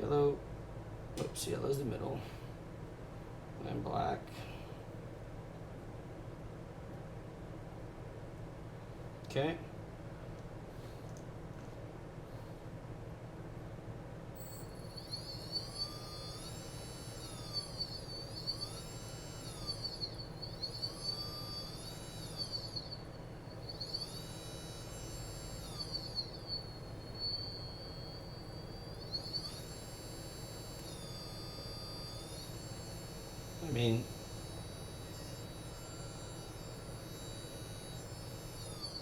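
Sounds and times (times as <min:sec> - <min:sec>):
drone motor whine: 0:14.4 - 0:39.0.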